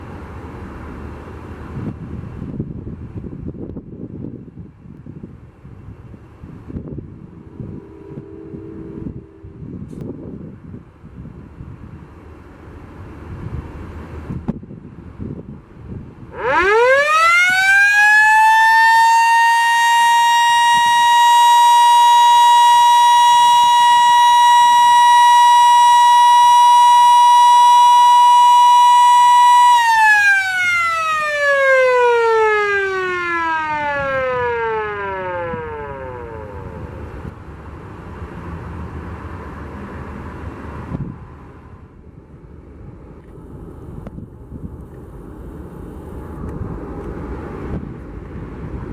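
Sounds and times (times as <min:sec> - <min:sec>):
fire siren winding: 0:16.3 - 0:37.0.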